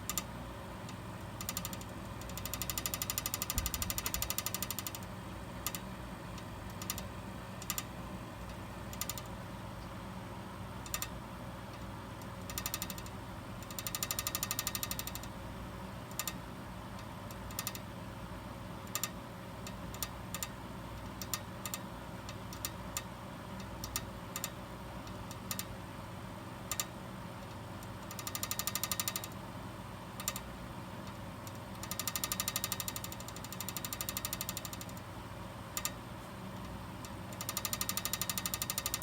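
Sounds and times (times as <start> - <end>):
rapid buzzing rattle: 12.4 - 15.3, 28.0 - 29.3, 31.8 - 35.0, 37.3 - 39.0.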